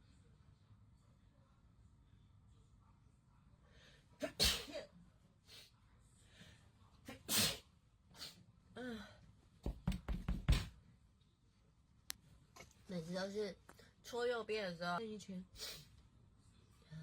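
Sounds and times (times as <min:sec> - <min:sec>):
person sneezing: 0:04.2 - 0:04.8, 0:07.1 - 0:08.4.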